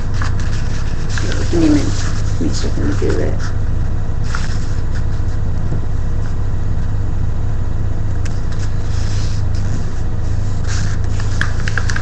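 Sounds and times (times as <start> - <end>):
paper crinkling: 0.0 - 3.5, 8.4 - 12.0.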